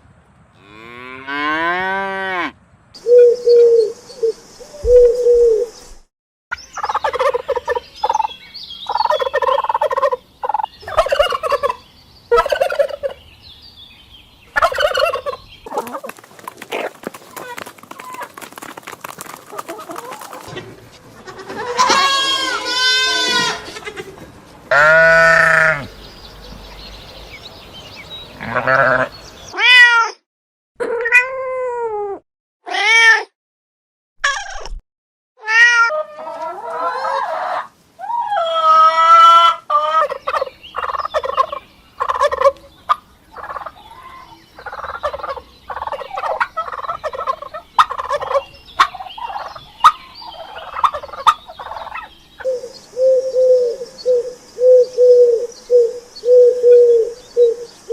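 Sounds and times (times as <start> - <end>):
animal cries rising and falling: 21.3 - 24.1, 35.4 - 37.4.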